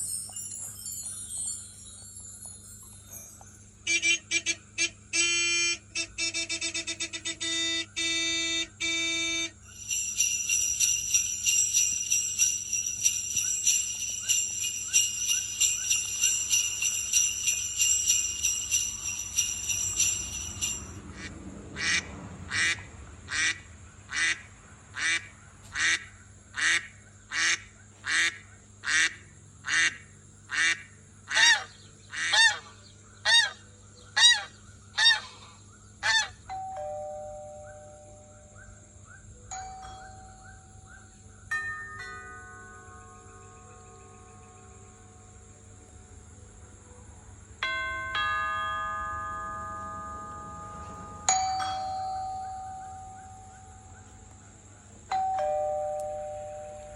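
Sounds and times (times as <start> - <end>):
high jingling buzz: 0.0 - 21.8, 36.3 - 46.4, 47.3 - 54.3, 54.9 - 56.9
pitch-sweeping honk-like calls: 3.8 - 9.7.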